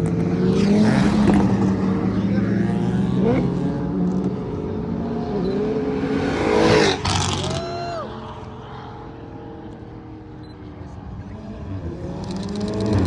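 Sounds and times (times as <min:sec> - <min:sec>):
car driving past: 0:00.6 - 0:10.3
brief rising whistle: 0:05.3 - 0:07.8.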